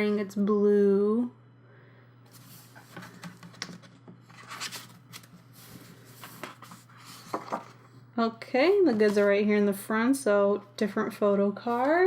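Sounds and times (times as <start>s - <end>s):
paper and plastic rustling: 2.3s - 7.9s.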